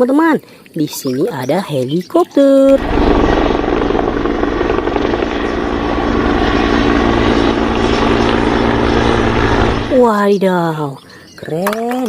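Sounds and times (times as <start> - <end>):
helicopter rotor and engine: 2.6 - 10.3.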